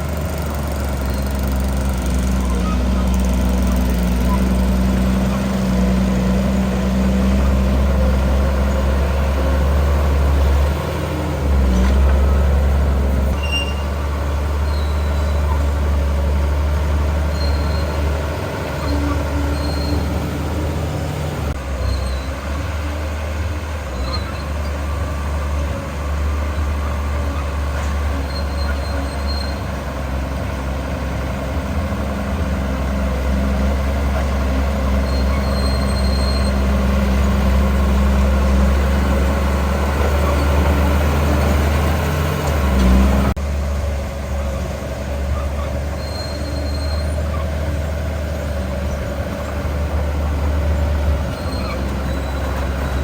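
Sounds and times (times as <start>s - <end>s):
diesel engine of heavy machinery: 0.0s - 53.0s
faint high squeaks: 0.1s - 22.6s, 26.5s - 29.8s, 34.1s - 41.0s, 45.2s - 49.5s, 51.0s - 53.0s.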